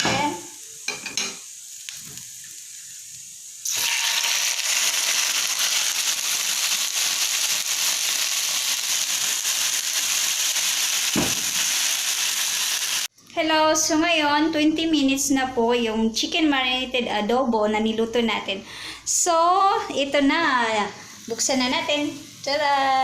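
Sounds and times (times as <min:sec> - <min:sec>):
chicken sizzling in oil: 0:00.3 - 0:13.1.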